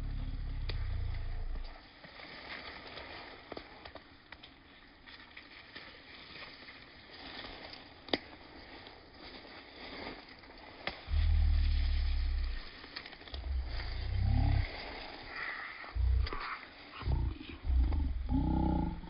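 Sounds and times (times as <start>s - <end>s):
deep low roar-like call: 0.0s - 1.7s, 11.1s - 12.7s, 13.4s - 19.0s
faint crackling: 7.4s - 19.0s.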